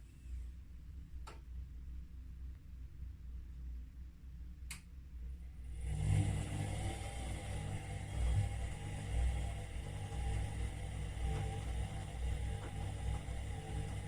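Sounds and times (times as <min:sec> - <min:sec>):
washing machine rumbling: 0:05.7 - 0:14.0.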